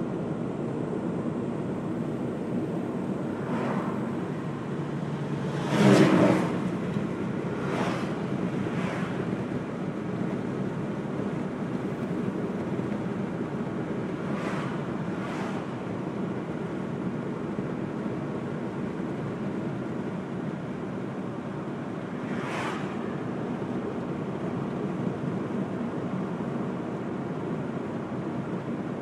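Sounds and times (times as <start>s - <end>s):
car road and wind noise: 0.0s - 29.0s
vehicles whooshing past: 1.8s - 10.2s, 13.6s - 16.9s, 21.8s - 24.0s.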